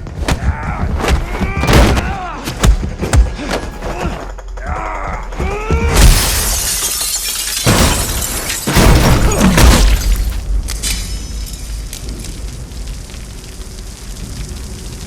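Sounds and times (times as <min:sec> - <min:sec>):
glass shattering crash: 0:05.9 - 0:11.9
heavy crash: 0:06.0 - 0:11.9.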